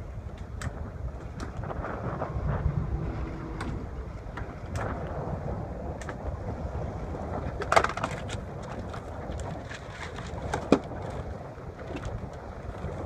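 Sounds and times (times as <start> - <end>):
wind and water around boat: 0.0 - 13.0.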